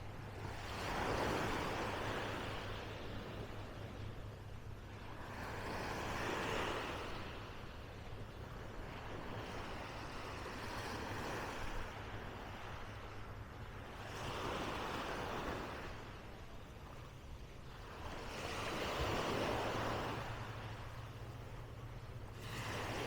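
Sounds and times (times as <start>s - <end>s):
small waves washing onto sand: 8.4s - 13.3s, 17.8s - 21.4s, 22.3s - 23.0s.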